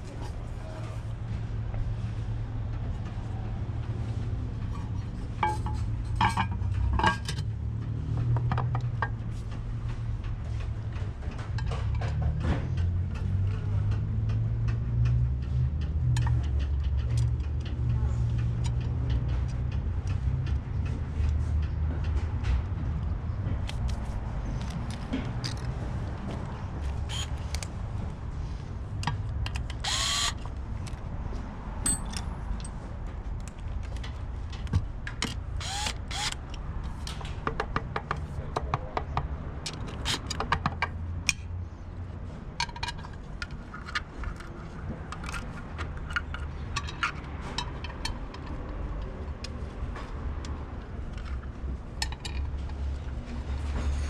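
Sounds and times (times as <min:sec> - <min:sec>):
hand tools clinking: 0:31.8 - 0:32.3.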